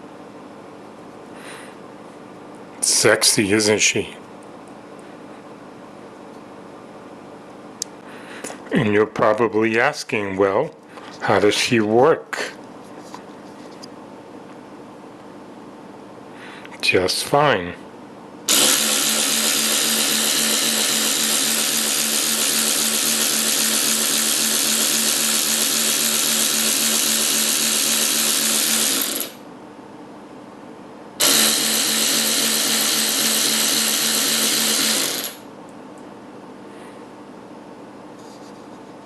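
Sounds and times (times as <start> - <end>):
electric ratchet wrench whirring: 18.5 - 29.4, 31.2 - 35.4.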